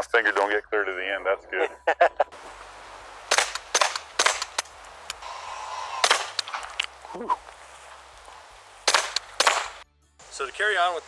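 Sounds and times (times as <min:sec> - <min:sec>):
suppressed pistol shots: 0:02.4 - 0:09.8.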